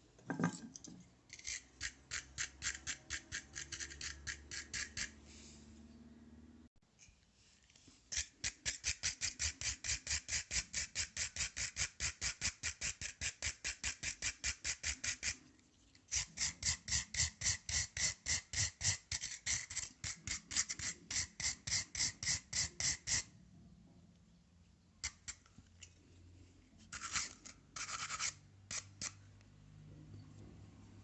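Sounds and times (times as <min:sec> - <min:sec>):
scraping on metal awl: 0:25.0 - 0:29.3.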